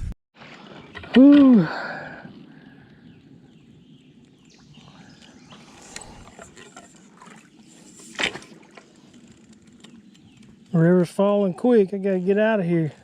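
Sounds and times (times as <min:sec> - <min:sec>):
faint clicks: 0:08.2 - 0:10.8.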